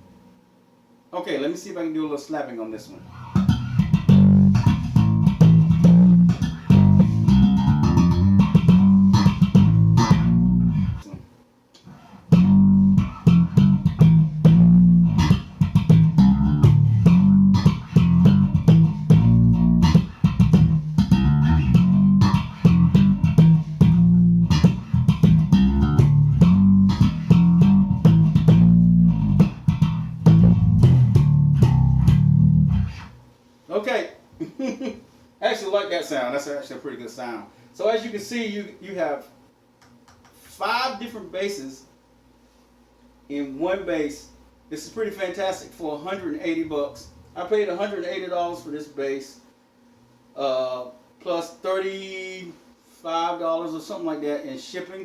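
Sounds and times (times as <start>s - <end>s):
slap bass line: 3.1s - 11.1s, 12.3s - 33.2s.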